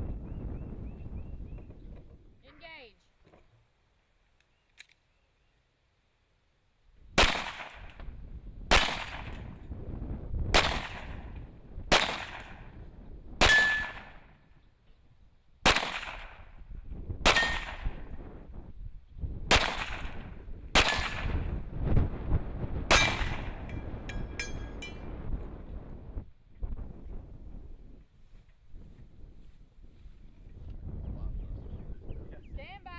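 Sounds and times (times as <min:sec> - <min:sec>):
rifle shots: 0:07.2 - 0:08.0, 0:08.7 - 0:09.4, 0:10.5 - 0:11.3, 0:11.9 - 0:12.8, 0:13.4 - 0:14.2, 0:15.6 - 0:16.5, 0:17.2 - 0:18.1, 0:19.5 - 0:21.5, 0:22.9 - 0:23.6
steel target ringing: 0:13.4 - 0:14.2, 0:17.3 - 0:17.8, 0:22.9 - 0:25.2.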